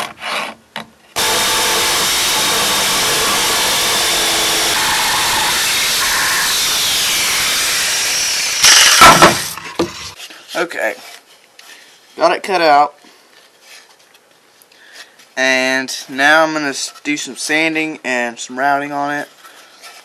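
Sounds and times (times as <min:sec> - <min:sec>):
electric saw cutting wood: 0:01.2 - 0:10.2.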